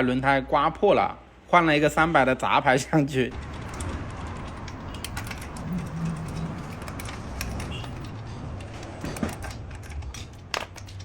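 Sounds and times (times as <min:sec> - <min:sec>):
metallic clicks of tools: 0:03.6 - 0:11.0.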